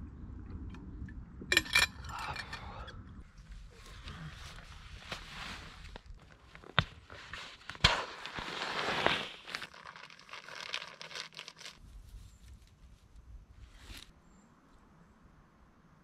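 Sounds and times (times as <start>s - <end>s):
camping gear rustling and crinkling: 3.4s - 14.2s.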